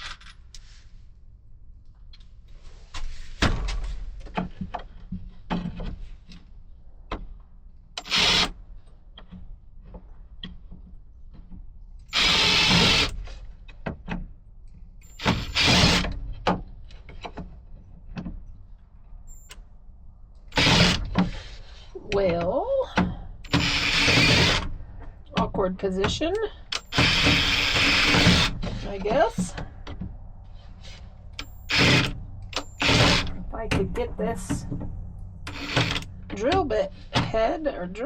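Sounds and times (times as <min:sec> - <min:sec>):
power drill driving screws: 0:08.0 - 0:08.5, 0:12.1 - 0:13.2, 0:15.2 - 0:16.1, 0:20.6 - 0:21.2, 0:23.5 - 0:24.7, 0:26.8 - 0:28.8, 0:31.6 - 0:33.3, 0:35.5 - 0:36.1.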